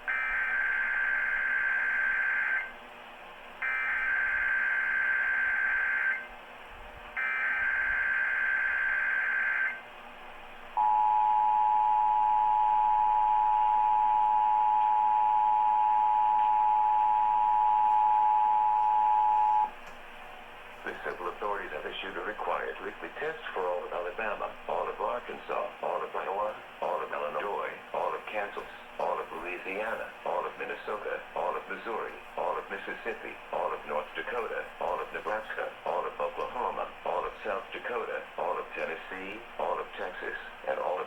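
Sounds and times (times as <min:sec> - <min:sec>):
two-tone attention signal: 0:10.8 - 0:19.7.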